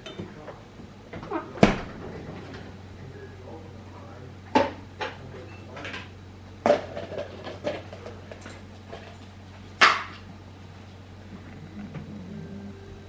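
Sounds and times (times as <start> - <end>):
dishes and containers clattering: 4.6 - 10.2.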